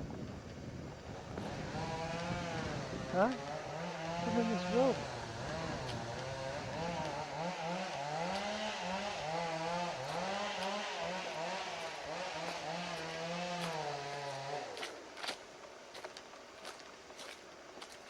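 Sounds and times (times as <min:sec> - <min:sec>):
chainsaw engine revving: 0:01.2 - 0:15.0.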